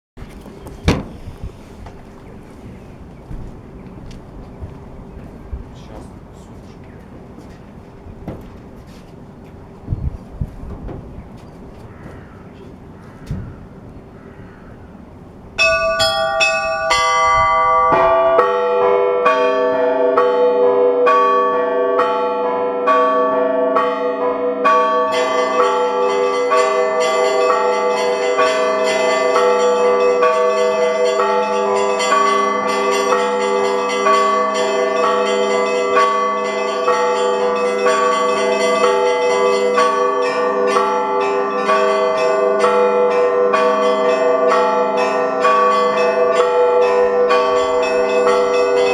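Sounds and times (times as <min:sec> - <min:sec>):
large bells deep tones: 0:11.9 - 0:48.9
small high bells chiming rapidly: 0:15.6 - 0:17.9.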